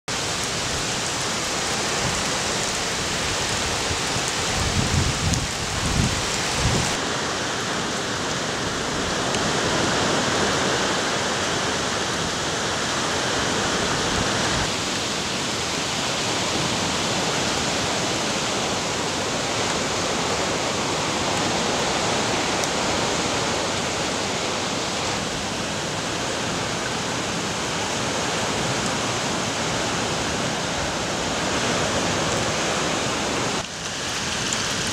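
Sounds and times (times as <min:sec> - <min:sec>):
rushing rain and floodwater: 0:00.1 - 0:34.9.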